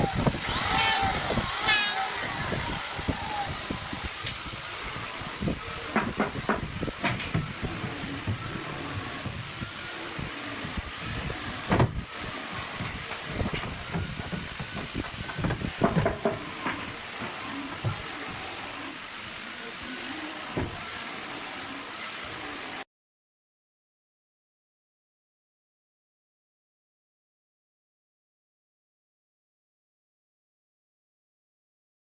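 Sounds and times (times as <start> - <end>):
steady hissing noise: 0.0 - 22.8.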